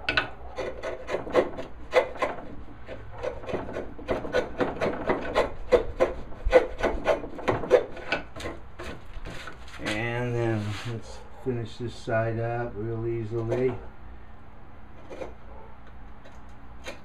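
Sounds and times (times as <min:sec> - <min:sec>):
chisel scraping wood: 0:00.0 - 0:11.0, 0:13.3 - 0:13.9, 0:14.9 - 0:15.4, 0:16.2 - 0:17.0.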